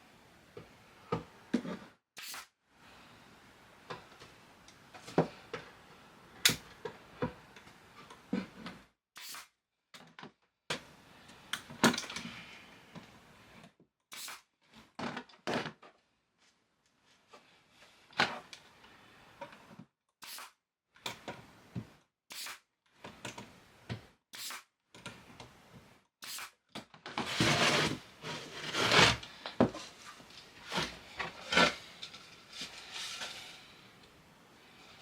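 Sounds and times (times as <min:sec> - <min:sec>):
wood scraping and rubbing: 0:27.2 - 0:29.3.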